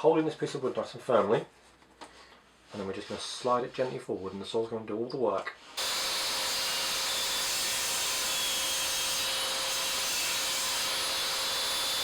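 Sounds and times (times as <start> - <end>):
table saw cutting wood: 5.8 - 12.0.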